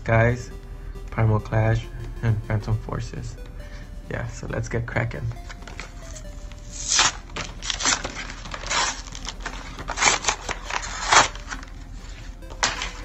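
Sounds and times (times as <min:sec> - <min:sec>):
plastic packaging being torn open: 0:06.8 - 0:11.7.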